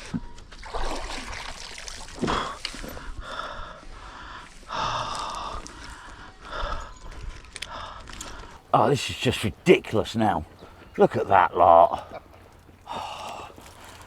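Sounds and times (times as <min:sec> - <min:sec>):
person breathing heavily: 0:02.3 - 0:08.7, 0:12.8 - 0:14.0.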